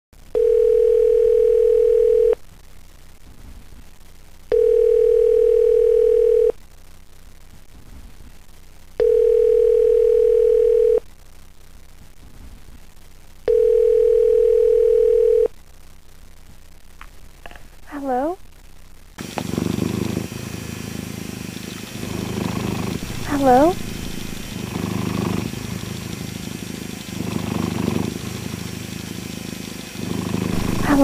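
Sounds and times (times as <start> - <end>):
telephone ringback tone: 0.4 - 2.4, 4.5 - 6.5, 9.0 - 11.0, 13.5 - 15.5.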